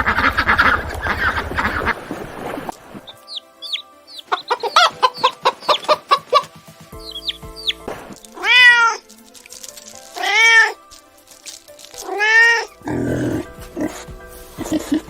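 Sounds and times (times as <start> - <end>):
light background music: 0.0 - 15.0
cat meowing: 8.4 - 9.0, 10.2 - 10.8.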